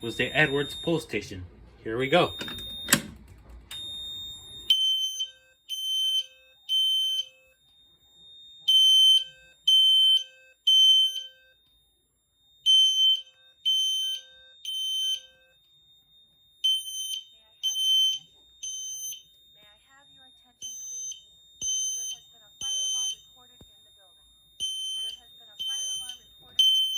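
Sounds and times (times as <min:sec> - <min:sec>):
faint steady high tone: 0:00.0 - 0:03.0, 0:19.1 - 0:26.9
fire alarm horn blasts: 0:00.0 - 0:03.1, 0:03.7 - 0:11.7, 0:12.6 - 0:26.9.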